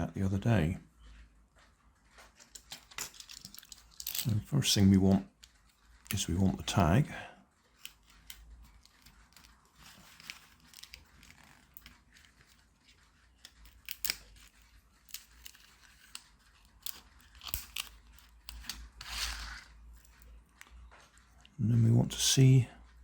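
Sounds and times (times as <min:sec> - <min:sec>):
label peeling rustle: 0:07.6 - 0:21.6
packaging crinkling and clicks: 0:07.8 - 0:21.2.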